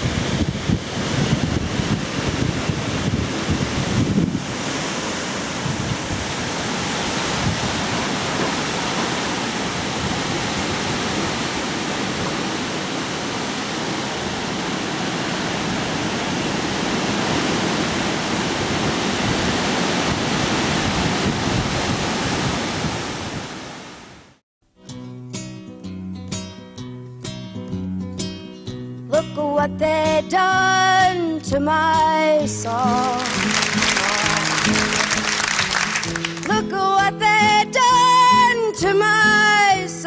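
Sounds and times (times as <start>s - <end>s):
wind rushing: 0.0s - 8.4s, 9.6s - 23.8s
rain: 33.2s - 36.5s.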